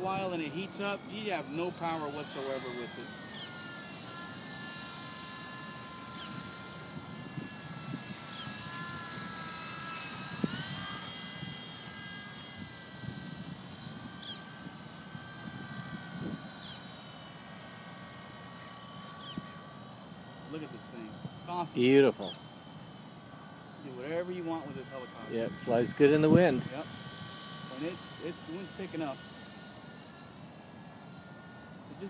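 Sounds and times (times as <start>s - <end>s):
rc helicopter rotor whining: 0.0s - 32.0s
wind buffeting microphone: 6.2s - 9.4s, 10.2s - 11.6s, 15.4s - 16.5s.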